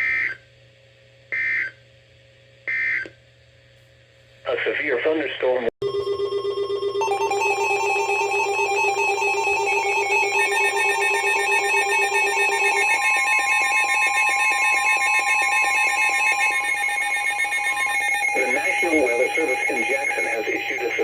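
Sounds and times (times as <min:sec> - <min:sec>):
steady electronic alert tones: 0:05.8 - 0:21.0
warbling two-pitch tone: 0:05.8 - 0:21.0.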